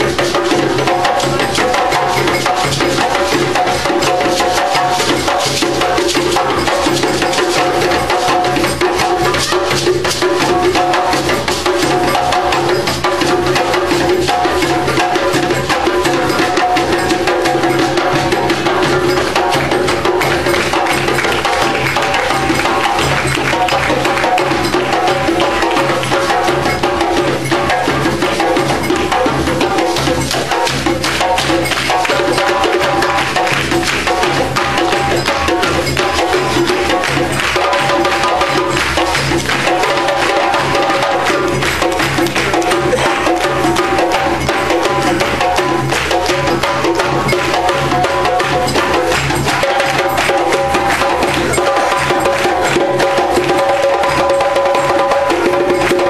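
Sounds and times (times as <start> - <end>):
hand drums: 0.0 - 56.0.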